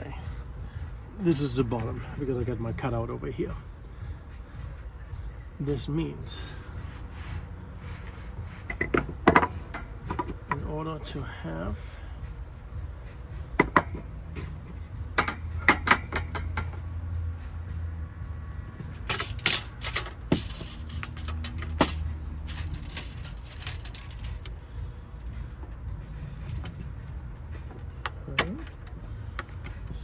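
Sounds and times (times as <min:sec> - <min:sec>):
steady low hum: 0:00.0 - 0:30.0
metal parts rattling: 0:18.9 - 0:24.6
clicks and knocks of tools: 0:19.1 - 0:24.5.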